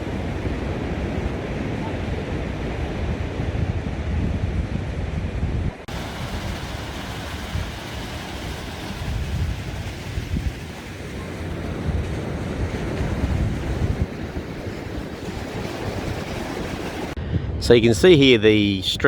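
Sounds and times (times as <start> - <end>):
surf washing on a beach: 0.0 - 17.2
wind buffeting microphone: 0.0 - 19.0.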